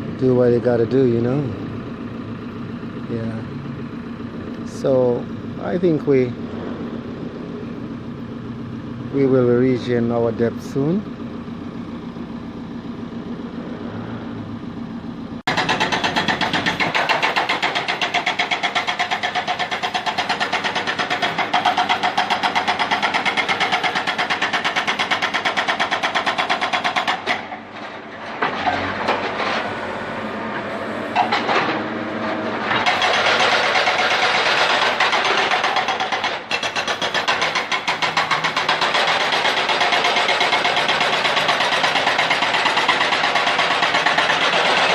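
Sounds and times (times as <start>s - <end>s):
diesel engine running: 0.0s - 44.9s
pulsing mechanical clatter: 15.5s - 29.7s, 31.2s - 44.9s.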